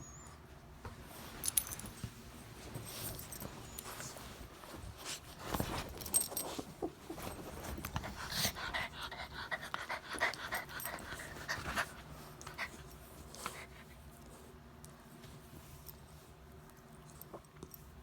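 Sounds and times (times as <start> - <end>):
dog panting: 6.8 - 14.0.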